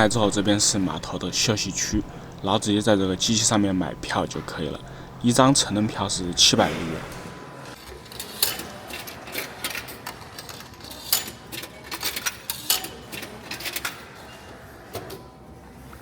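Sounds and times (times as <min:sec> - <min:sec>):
ticket machine buttons clicking: 0:00.0 - 0:07.2.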